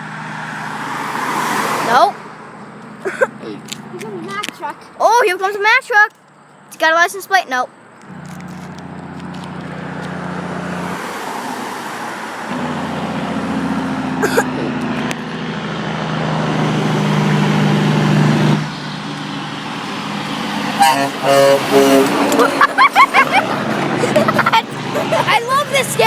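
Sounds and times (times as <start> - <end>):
road traffic: 0.0 - 26.0
heavy truck passing by: 8.1 - 26.0.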